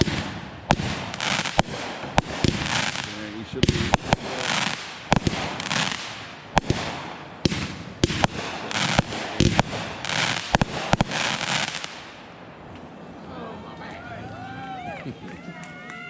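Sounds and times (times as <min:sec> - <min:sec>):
fireworks bangs: 0:00.0 - 0:12.3
fireworks crackling and hissing: 0:00.0 - 0:12.4.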